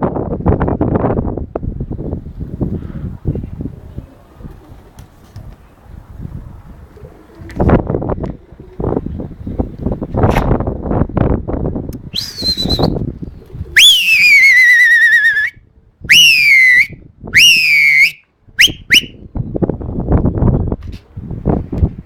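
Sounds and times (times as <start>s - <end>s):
person whistling loudly: 12.2s - 13.0s, 13.8s - 19.2s.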